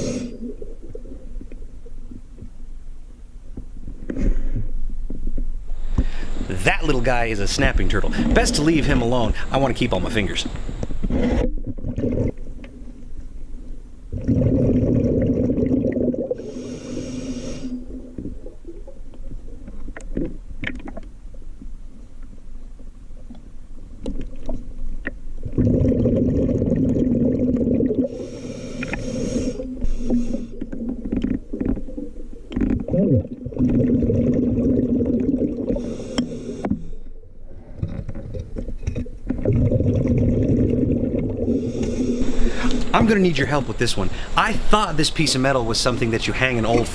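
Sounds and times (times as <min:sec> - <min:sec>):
regulator inhale hissing: 0:00.0 - 0:00.5, 0:05.7 - 0:06.5, 0:08.1 - 0:08.4, 0:09.3 - 0:09.5, 0:16.4 - 0:18.0, 0:28.1 - 0:30.7, 0:35.7 - 0:37.1, 0:41.5 - 0:42.9, 0:44.1 - 0:44.4
exhaled bubbles rumbling underwater: 0:00.0 - 0:04.1, 0:10.4 - 0:16.7, 0:23.8 - 0:36.2, 0:36.8 - 0:43.2.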